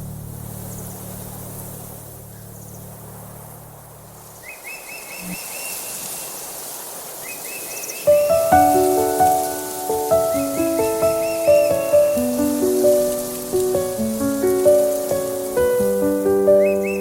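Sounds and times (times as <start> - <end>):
low steady sound: 0.0 - 4.4
birds chirping in trills: 0.6 - 6.6, 7.2 - 17.0
plucked melodic music: 8.1 - 17.0.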